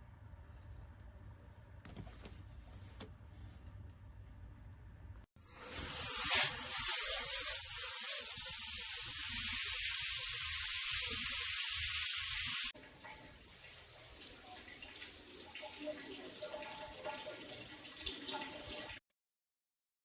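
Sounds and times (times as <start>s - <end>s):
shower head spraying water: 5.4s - 12.7s.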